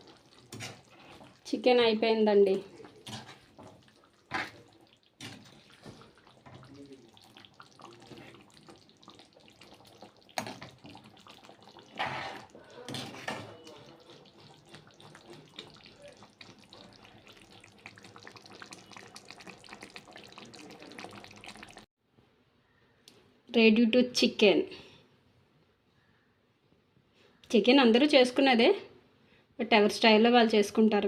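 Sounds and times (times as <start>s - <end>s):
curry bubbling in a pan: 0.0s - 21.9s.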